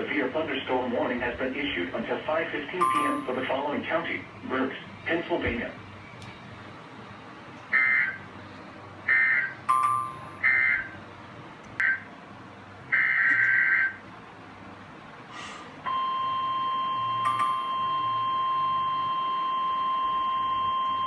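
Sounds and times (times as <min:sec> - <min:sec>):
steady warning alarm tone: 0:02.6 - 0:05.4, 0:06.0 - 0:08.4, 0:09.0 - 0:11.1, 0:12.9 - 0:14.1, 0:15.8 - 0:21.0.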